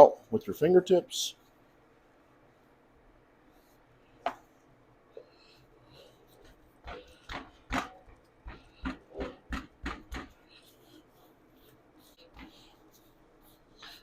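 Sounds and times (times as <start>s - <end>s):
hands slapping pizza dough: 6.4s - 10.8s.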